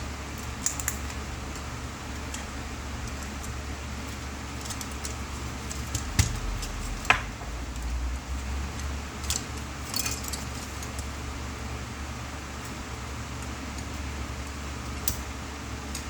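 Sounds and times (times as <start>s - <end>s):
steady low hum: 0.0s - 16.0s
tools and small parts clicking: 0.4s - 1.7s, 2.3s - 6.8s, 8.7s - 11.1s.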